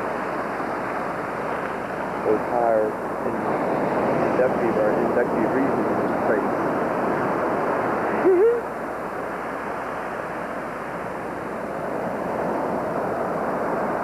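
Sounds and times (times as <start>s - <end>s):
ocean surf washing onto beach: 0.0s - 14.0s.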